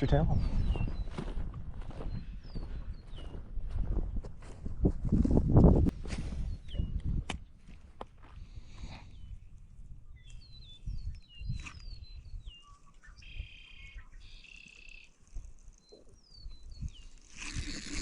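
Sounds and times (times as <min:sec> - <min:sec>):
birds chirping: 0:00.0 - 0:03.5, 0:06.3 - 0:07.2, 0:08.4 - 0:18.0.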